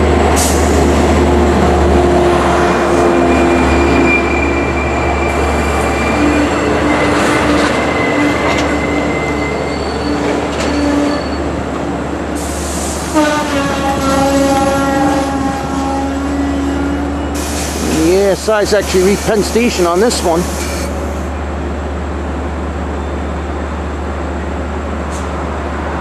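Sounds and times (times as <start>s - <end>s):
rumble of train cars: 0.0s - 26.0s
train wheel and brake squeal: 3.0s - 11.6s, 20.5s - 21.0s.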